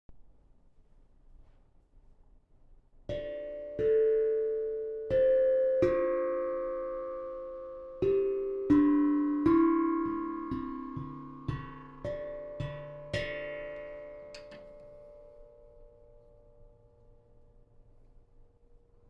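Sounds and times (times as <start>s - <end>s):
tongue drum notes: 3.1s - 15.8s.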